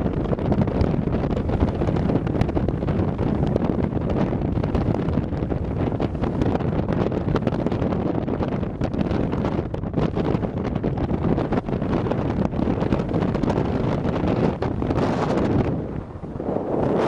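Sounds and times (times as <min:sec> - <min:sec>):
strong wind buffeting microphone: 0:00.0 - 0:17.0.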